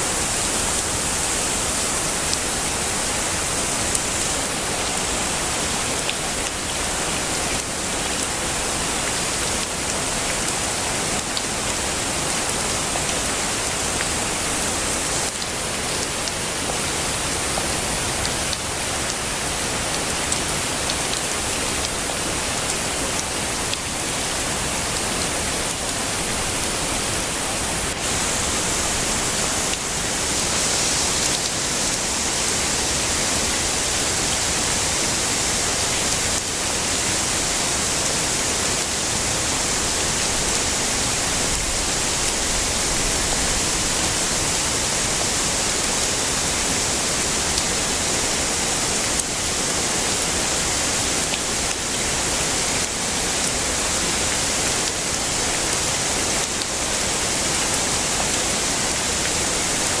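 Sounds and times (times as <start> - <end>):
heavy rain falling: 0.0 - 60.0.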